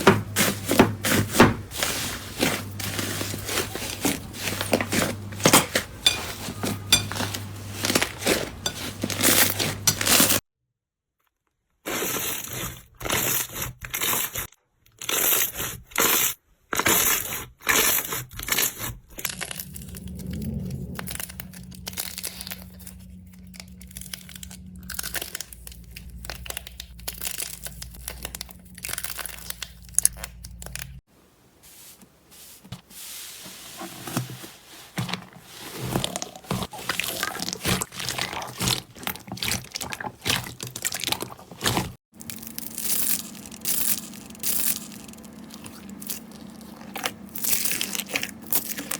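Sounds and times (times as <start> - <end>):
slime crackling and popping: 17.8 - 31.0, 36.1 - 48.9.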